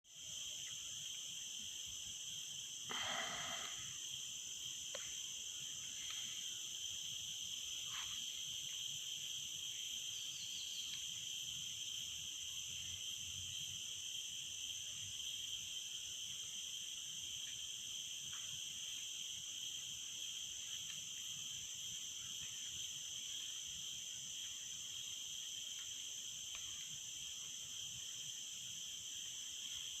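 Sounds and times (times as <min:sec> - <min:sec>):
shrill insect chorus: 0:00.1 - 0:30.0
faint chirps: 0:02.8 - 0:11.8.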